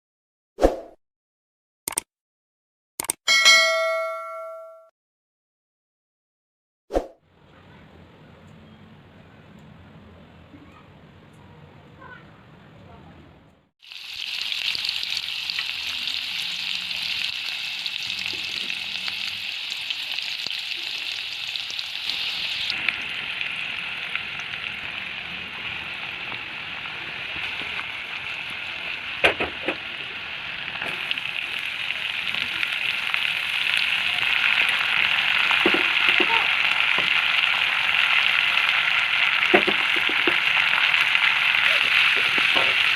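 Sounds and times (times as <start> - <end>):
vegetables sizzling in hot oil: 13.8 - 42.9.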